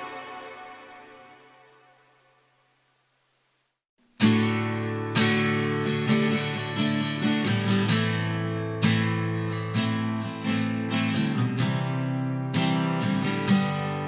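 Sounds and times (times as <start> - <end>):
acoustic guitar strumming chords: 4.2 - 14.0.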